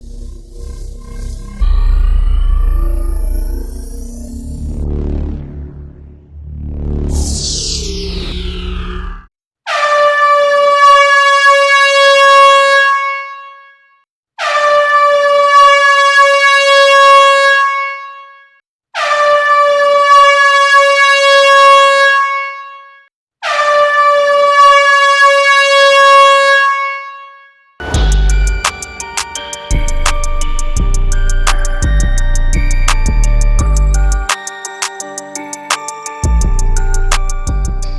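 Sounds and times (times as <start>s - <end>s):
music: 27.8s - 37.9s.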